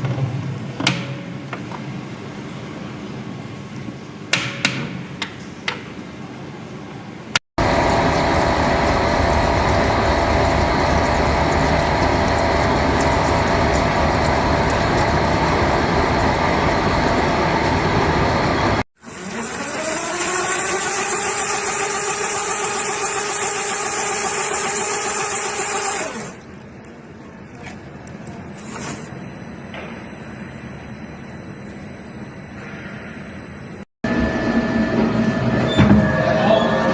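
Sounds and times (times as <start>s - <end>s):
industrial machinery running: 7.6s - 26.4s
motor spinning up with whine: 7.6s - 26.4s
high-pitched tone: 28.5s - 33.9s.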